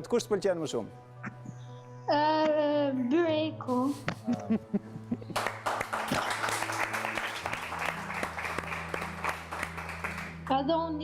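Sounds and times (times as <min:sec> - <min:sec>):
audience applauding: 0:05.3 - 0:10.5.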